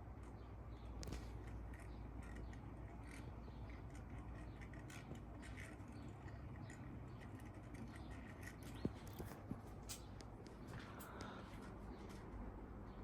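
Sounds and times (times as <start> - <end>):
fan bearings scraping and ticking: 0.2 - 10.4.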